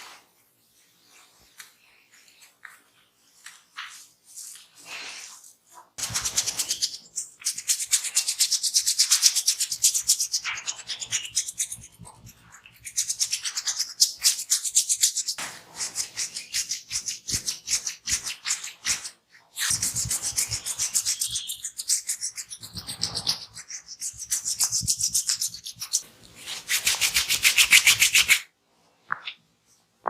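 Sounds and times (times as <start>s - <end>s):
hands rubbing hair and skin: 0.8s - 12.2s, 13.0s - 28.4s.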